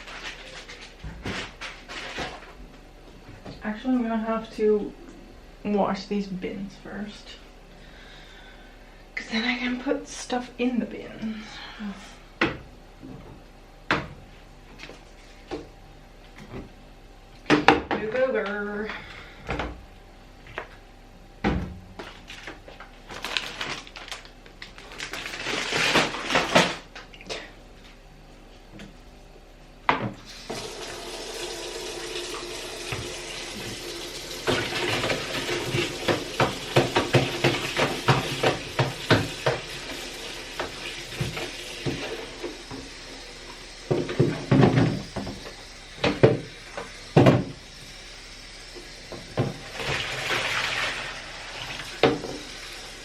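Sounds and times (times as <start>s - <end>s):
tap running water: 30.3s - 48.0s, 48.6s - 53.0s
bins knocking in a sink: 34.4s - 39.7s.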